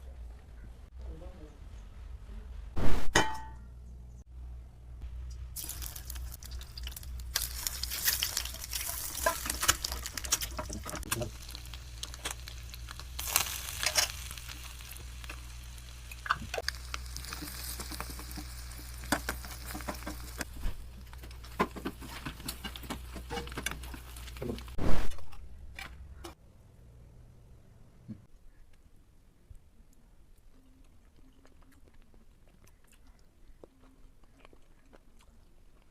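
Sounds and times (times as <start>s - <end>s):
egg sizzling in a pan: 5.5s - 24.8s
utensil scraping and tapping: 21.2s - 24.6s.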